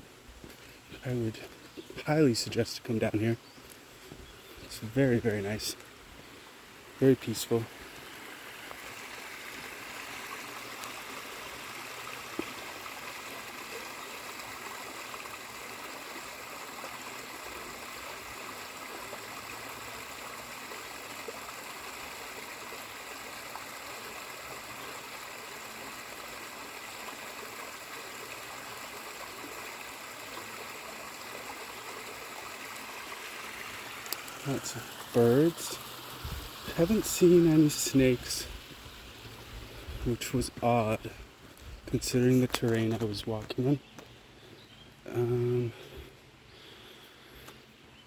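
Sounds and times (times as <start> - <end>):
river flowing: 1.5 - 47.8
faint ticks: 34.0 - 34.4.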